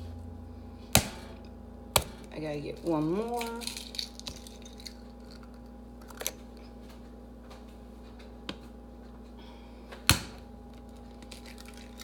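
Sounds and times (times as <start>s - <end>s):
egg cracking against a bowl: 1.0s - 6.7s, 10.0s - 12.0s.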